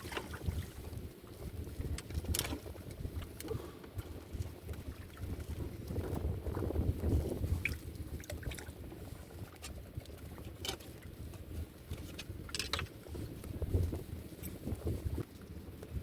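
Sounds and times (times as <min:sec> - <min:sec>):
wind on microphone: 0:00.0 - 0:16.0.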